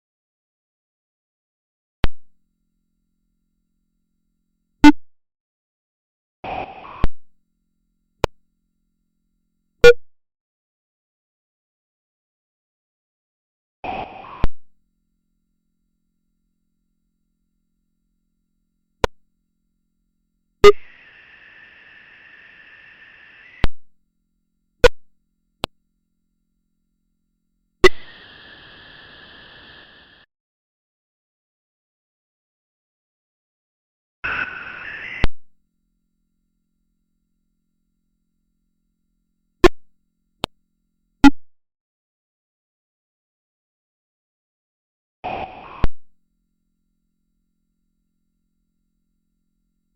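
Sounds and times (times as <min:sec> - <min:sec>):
sharp click: 0:02.0 - 0:02.3
sharp synthesized clicks: 0:20.6 - 0:21.0, 0:27.8 - 0:28.1
short hissing noise burst: 0:27.8 - 0:30.2.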